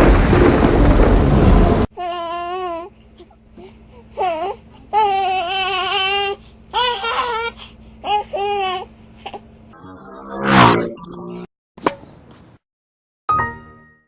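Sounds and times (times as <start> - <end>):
infant crying: 2.0 - 9.4
faint steady hum: 2.0 - 9.8.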